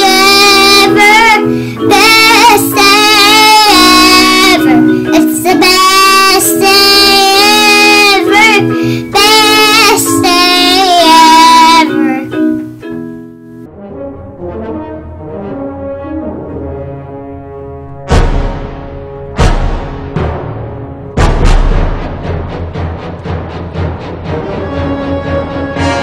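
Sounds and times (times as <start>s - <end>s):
young child singing: 0.0s - 12.5s
instrumental backing music: 0.0s - 26.0s
child breathing: 1.4s - 1.9s, 8.6s - 9.2s.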